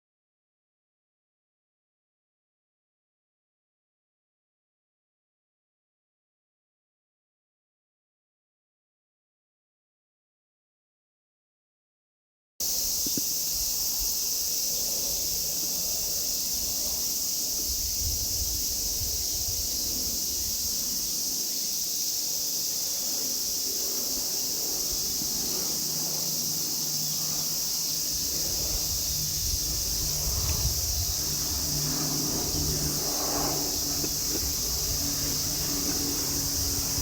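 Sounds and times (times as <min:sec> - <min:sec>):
cicadas droning: 0:12.6 - 0:37.0
distant aircraft hum: 0:12.6 - 0:37.0.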